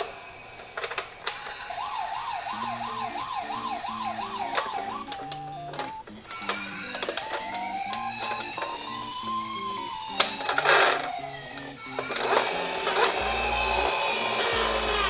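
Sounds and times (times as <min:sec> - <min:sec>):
sharp clicks: 0:00.0 - 0:15.0
toy electronic siren wailing: 0:00.0 - 0:15.0
low electronic melody: 0:02.5 - 0:06.2, 0:12.4 - 0:15.0.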